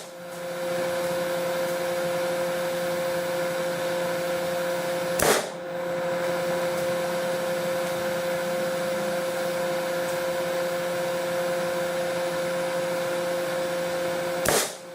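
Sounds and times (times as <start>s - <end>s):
steady mechanical hum: 0.0s - 14.9s
rifle shot crack: 5.2s - 5.6s, 14.4s - 14.8s.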